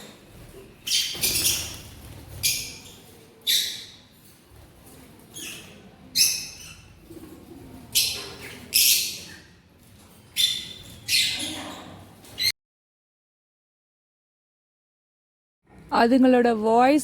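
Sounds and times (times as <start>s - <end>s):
birds screeching: 0.8s - 4.1s, 5.3s - 7.0s, 7.9s - 9.6s, 10.3s - 12.5s.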